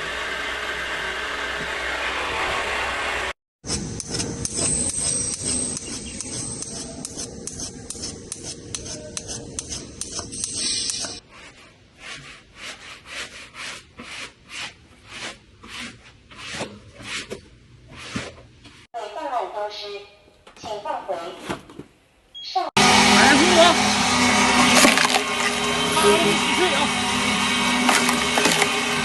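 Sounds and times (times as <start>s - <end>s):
rhythmic rubbing strokes: 4.1s - 11.2s.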